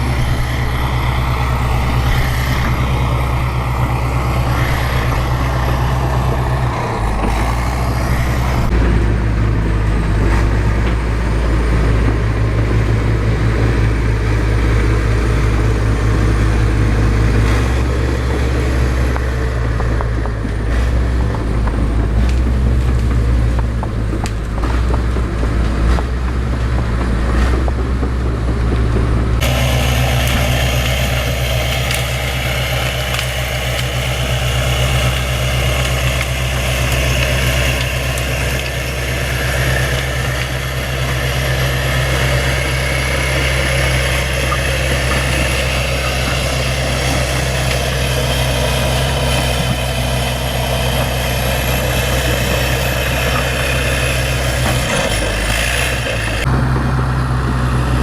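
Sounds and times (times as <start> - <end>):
bulldozer diesel engine running: 0.0 - 58.0.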